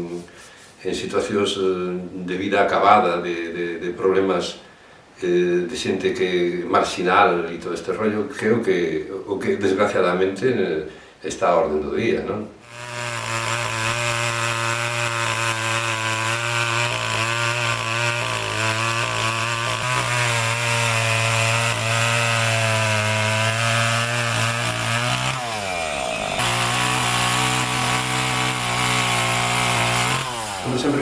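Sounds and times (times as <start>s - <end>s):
chainsaw cutting wood: 12.6s - 31.0s.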